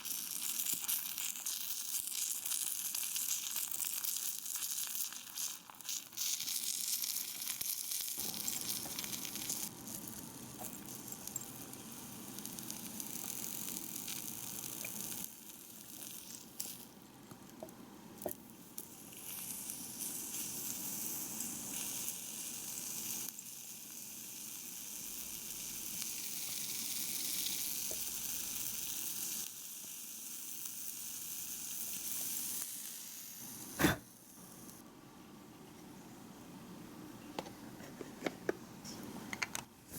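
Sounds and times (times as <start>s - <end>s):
food sizzling in a frying pan: 0.0s - 17.1s, 18.2s - 34.8s.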